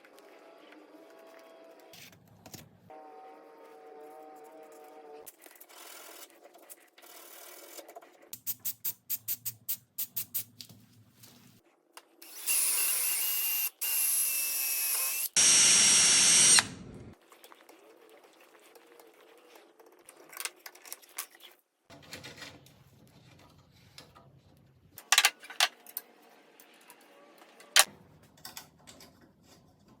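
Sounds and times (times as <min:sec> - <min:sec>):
power drill running: 0:12.2 - 0:17.2.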